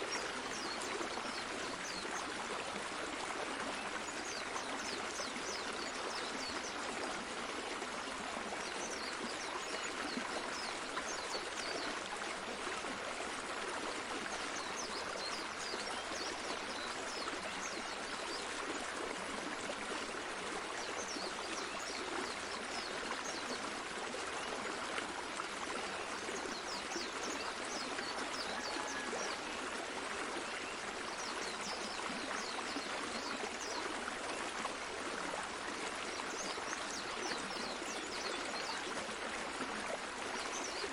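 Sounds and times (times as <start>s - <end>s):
stream of running water: 0.0s - 40.9s.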